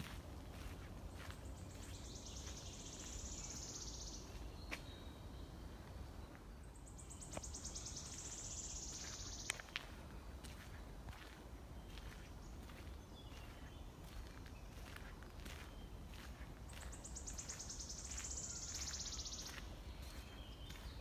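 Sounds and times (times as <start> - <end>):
footsteps on forest floor: 0.0 - 3.7, 8.9 - 21.0.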